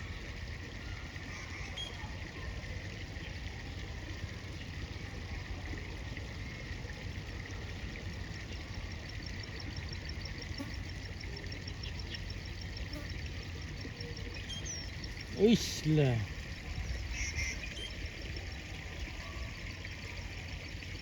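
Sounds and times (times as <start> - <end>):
river water flowing: 11.1 - 21.0.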